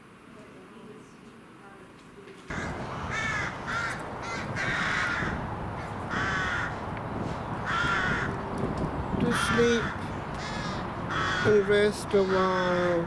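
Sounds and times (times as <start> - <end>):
crows cawing: 2.5 - 8.4, 9.3 - 13.0.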